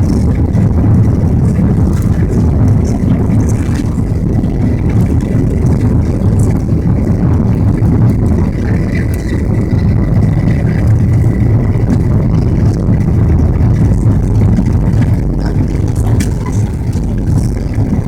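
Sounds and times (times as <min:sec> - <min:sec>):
faint high whine: 0:00.0 - 0:18.0
jet engine rumble in cabin: 0:00.0 - 0:18.0
rushing air: 0:00.0 - 0:18.0.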